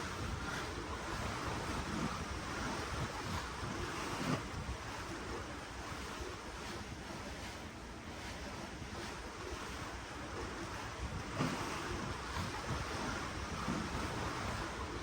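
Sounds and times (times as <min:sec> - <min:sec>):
wind buffeting microphone: 0:00.0 - 0:07.5, 0:08.1 - 0:15.0
ocean water rushing: 0:00.0 - 0:15.0.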